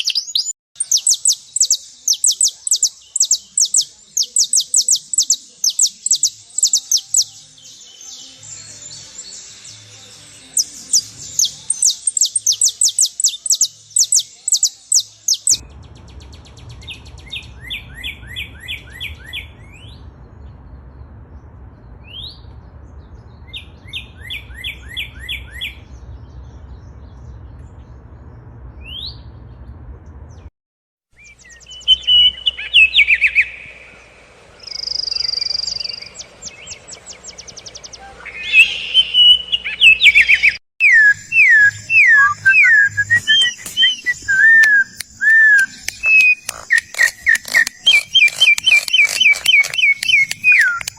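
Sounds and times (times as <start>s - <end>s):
birds chirping: 0.0s - 29.6s, 31.2s - 50.9s
bird rising whistles: 37.6s - 50.9s.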